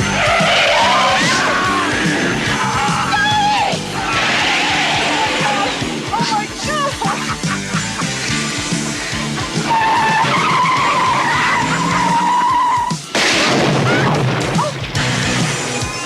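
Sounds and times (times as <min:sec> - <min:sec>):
car tyres squealing: 0:00.0 - 0:06.6, 0:09.4 - 0:13.1
tyre and engine noise: 0:00.0 - 0:13.3
rock music: 0:00.0 - 0:16.0.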